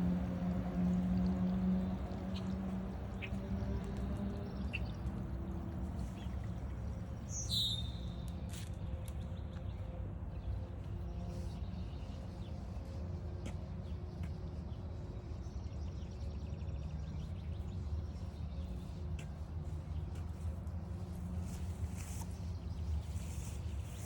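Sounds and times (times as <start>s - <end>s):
songbirds chirping: 0.0s - 24.0s
bird trill: 7.3s - 8.2s.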